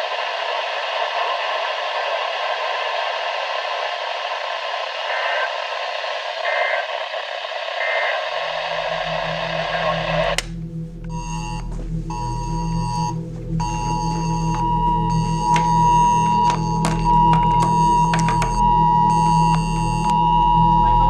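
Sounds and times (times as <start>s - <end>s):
radio static hiss: 0.0s - 21.0s
low hum: 2.0s - 21.0s
click: 10.3s - 11.2s, 14.5s - 20.2s
phone two-tone emergency alert: 11.1s - 21.0s.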